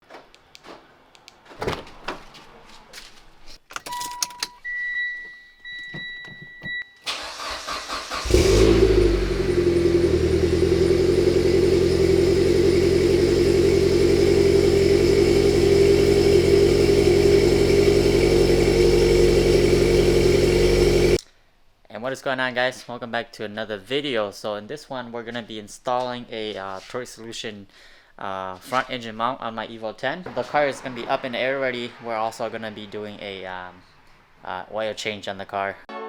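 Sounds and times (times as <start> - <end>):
car engine idling: 7.1 - 21.2.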